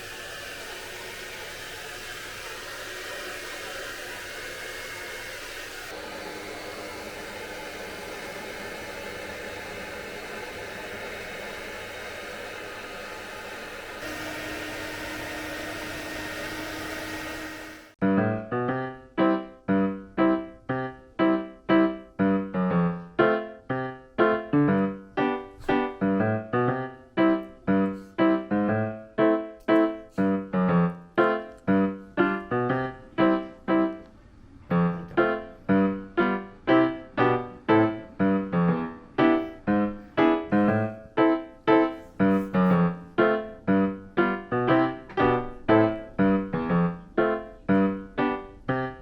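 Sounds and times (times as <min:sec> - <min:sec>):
plucky piano notes: 0:34.7 - 0:49.0.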